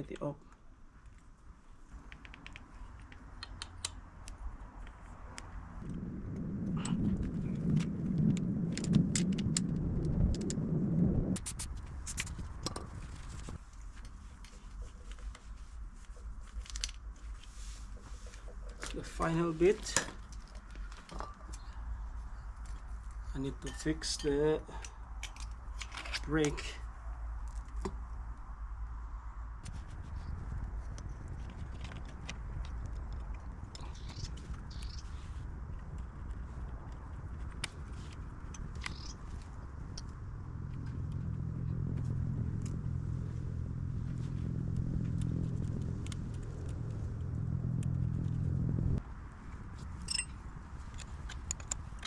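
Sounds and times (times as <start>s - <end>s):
tools clicking and tapping: 2.1s - 4.4s, 50.0s - 50.4s
low rumble: 5.3s - 23.4s, 30.2s - 51.0s.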